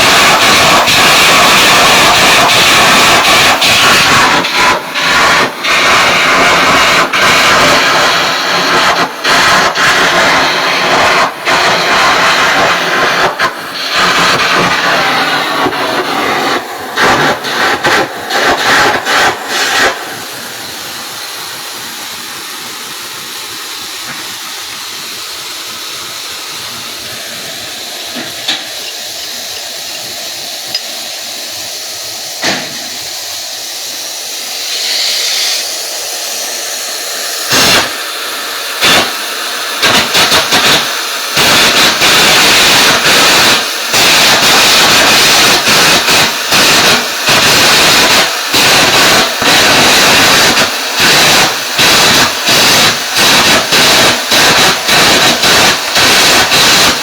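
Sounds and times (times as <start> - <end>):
stuttering welding bursts: 0.0 - 57.0
welding arc hissing and crackling: 0.0 - 57.0.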